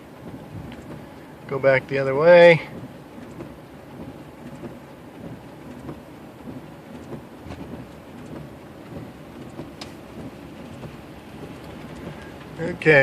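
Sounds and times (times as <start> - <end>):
vehicle rumbling from inside: 0.0 - 13.0
light knocks and clicks: 2.7 - 12.6.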